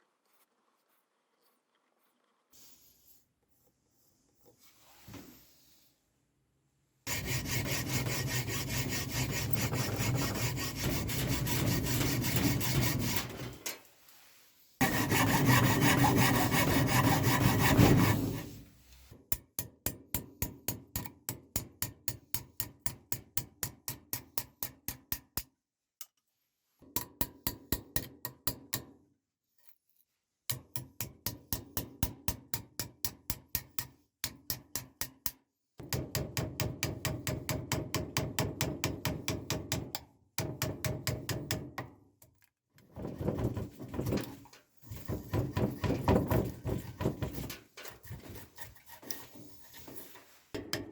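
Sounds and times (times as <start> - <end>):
hand tool scraping hard material: 7.1 - 13.8, 14.8 - 18.8, 43.0 - 50.6.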